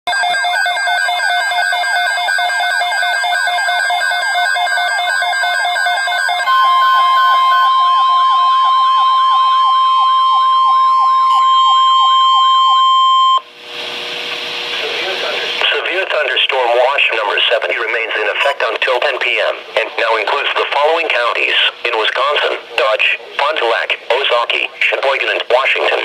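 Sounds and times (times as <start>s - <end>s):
pulsed beeping alarm tones: 0.1s - 13.5s
steady long alert tone: 0.1s - 13.5s
electronic siren sweeps: 0.5s - 13.4s.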